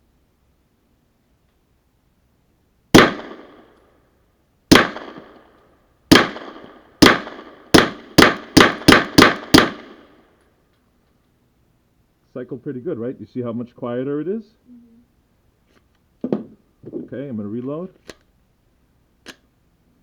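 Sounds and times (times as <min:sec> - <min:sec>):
suppressed pistol shots: 0:02.9 - 0:03.9, 0:04.7 - 0:10.2.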